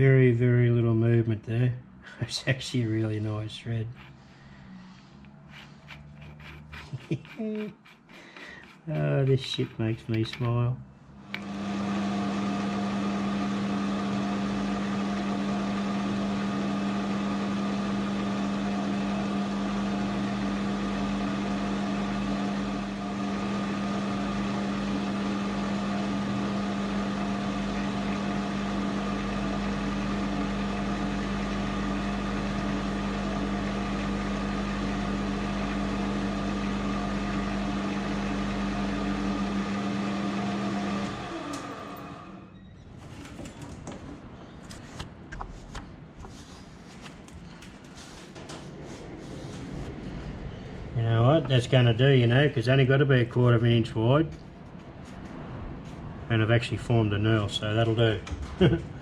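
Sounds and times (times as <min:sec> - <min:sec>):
metal lathe running: 0:03.8 - 0:04.2, 0:05.4 - 0:10.6, 0:11.2 - 0:42.5.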